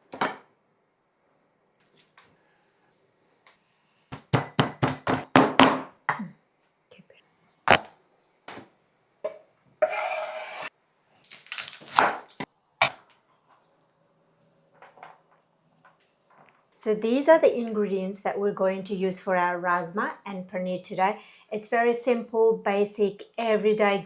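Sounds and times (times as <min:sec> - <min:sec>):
sharp kitchen knocks: 0:04.2 - 0:05.9, 0:07.7 - 0:07.9, 0:11.9 - 0:13.0.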